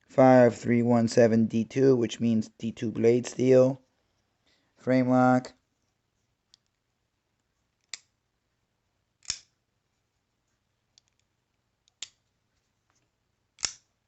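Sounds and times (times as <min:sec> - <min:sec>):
folding knife clicks: 0:09.2 - 0:09.5, 0:13.6 - 0:13.9.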